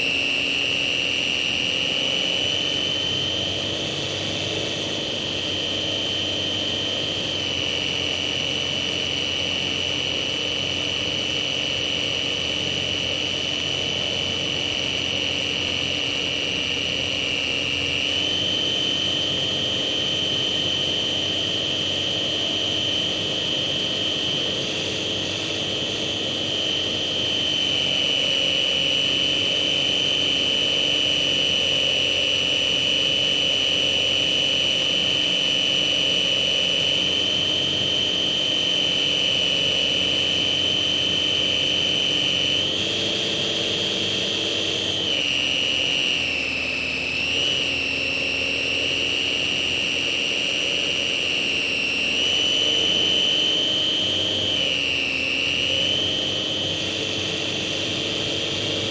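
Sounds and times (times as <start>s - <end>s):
model plane motor whine: 0.0s - 58.9s.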